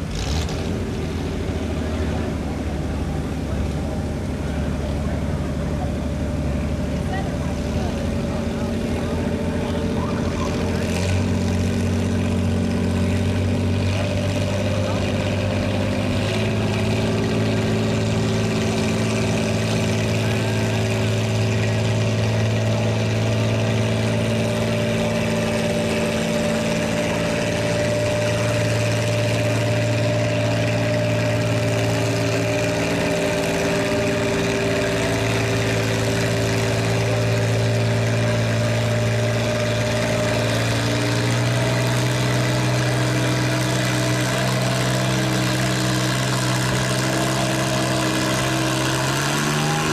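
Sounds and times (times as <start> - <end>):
tractor engine running: 0.0 - 49.9.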